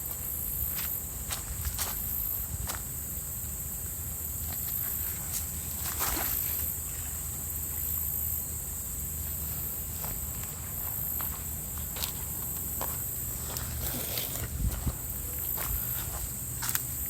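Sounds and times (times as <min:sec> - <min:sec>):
insects droning: 0:00.0 - 0:17.0
footsteps on ground: 0:00.1 - 0:02.9, 0:09.3 - 0:17.0.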